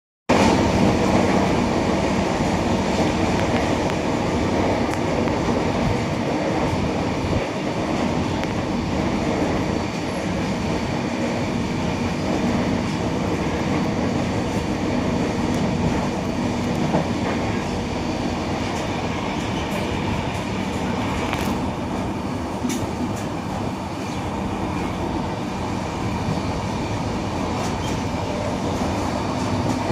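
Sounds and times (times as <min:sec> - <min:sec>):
train wheels rumbling on track: 0:00.3 - 0:29.9.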